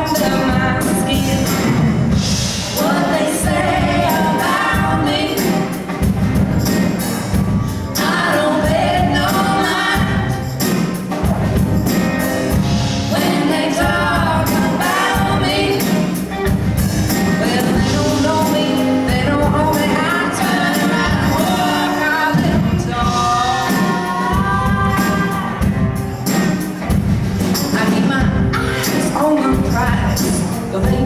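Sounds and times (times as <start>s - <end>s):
live band with percussive beat: 0.0s - 31.0s
women singing in harmony: 2.7s - 5.8s, 7.9s - 10.6s, 13.0s - 16.2s, 17.3s - 25.8s.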